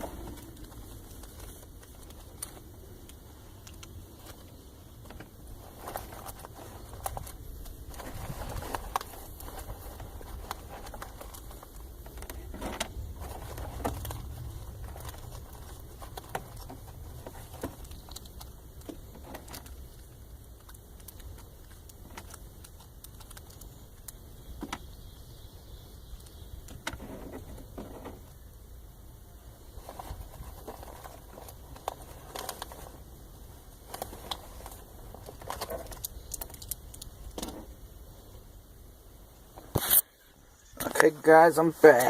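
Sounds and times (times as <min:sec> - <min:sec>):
small items clicking and rattling: 0:00.0 - 0:24.9, 0:29.8 - 0:33.0, 0:33.7 - 0:37.7
low steady rumble: 0:00.0 - 0:39.6.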